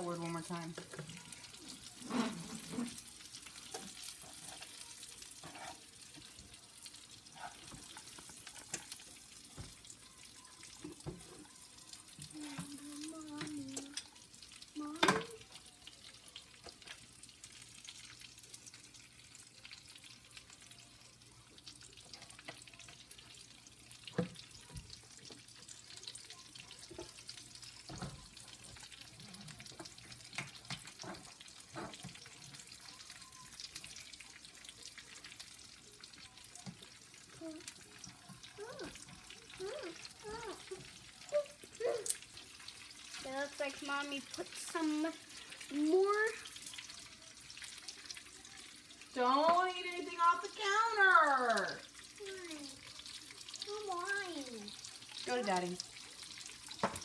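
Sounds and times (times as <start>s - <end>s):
cutlets sizzling in oil: 0.0s - 57.0s.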